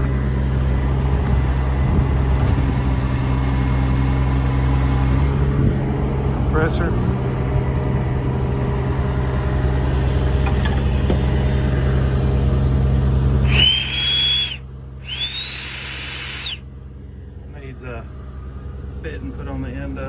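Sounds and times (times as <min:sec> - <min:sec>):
generator unit running: 0:00.0 - 0:20.0
compressed air blasts hissing: 0:13.4 - 0:16.6.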